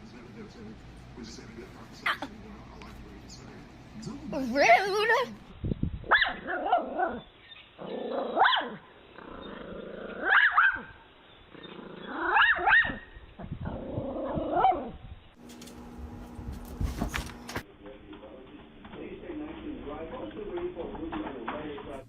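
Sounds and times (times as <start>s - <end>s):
dog howling and barking: 6.1s - 8.8s, 10.2s - 11.0s, 12.0s - 13.1s, 13.7s - 15.0s.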